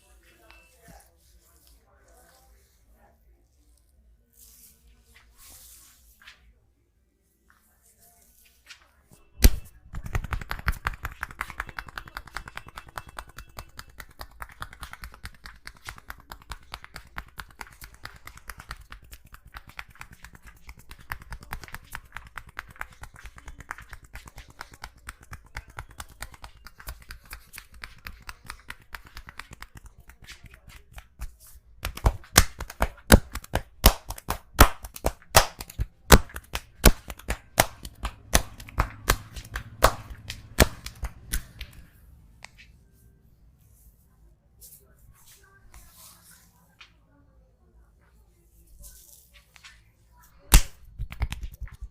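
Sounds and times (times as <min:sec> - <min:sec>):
hands tapping head and neck: 0:09.4 - 0:41.8, 0:50.5 - 0:51.9.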